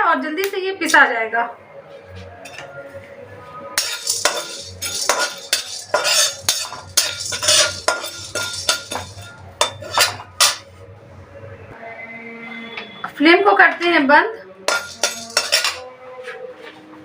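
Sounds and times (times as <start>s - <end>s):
spatula scraping spices in pan: 3.8s - 10.7s, 14.7s - 15.8s.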